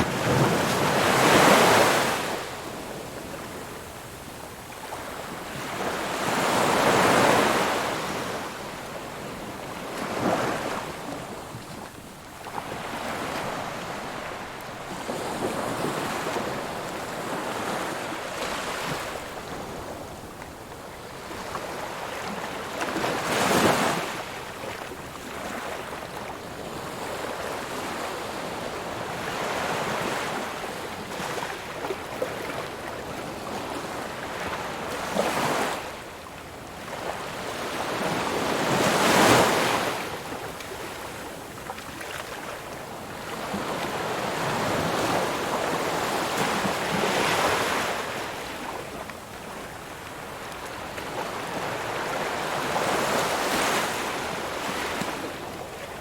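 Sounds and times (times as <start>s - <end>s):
ocean waves breaking: 0.0s - 3.5s.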